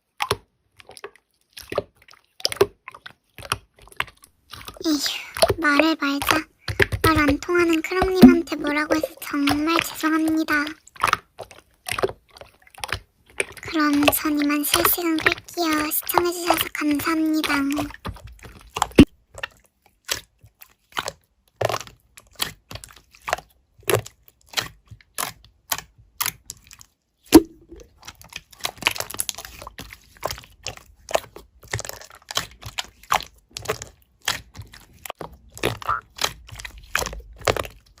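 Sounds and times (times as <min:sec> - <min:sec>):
slime squishing with pops: 0:00.0 - 0:38.0.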